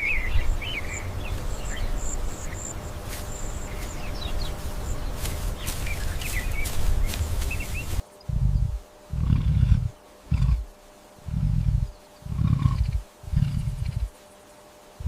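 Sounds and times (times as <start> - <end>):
bird chirps: 0.0 - 8.8
steady low rumble: 0.0 - 14.2
insect-like trill: 0.0 - 15.0.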